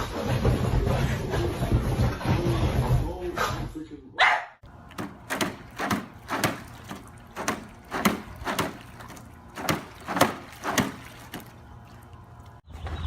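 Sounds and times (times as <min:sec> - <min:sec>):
sharp knocks: 0:04.9 - 0:11.5.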